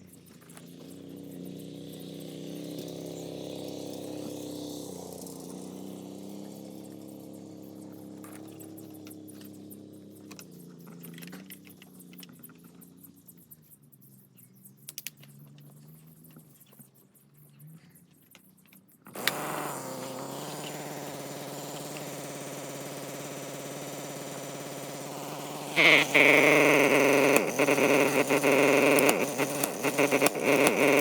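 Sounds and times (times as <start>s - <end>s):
brush cutter engine idling: 0.3s - 11.4s, 19.1s - 31.0s.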